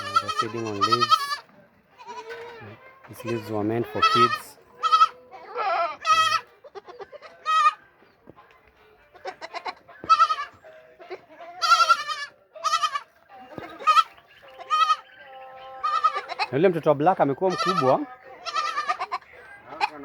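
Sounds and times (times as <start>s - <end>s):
goats bleating: 0.0s - 8.0s, 9.0s - 20.0s.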